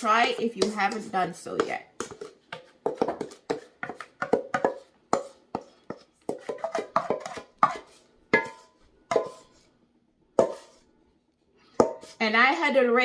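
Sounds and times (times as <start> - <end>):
utensil knocking against a dish: 1.6 - 7.8.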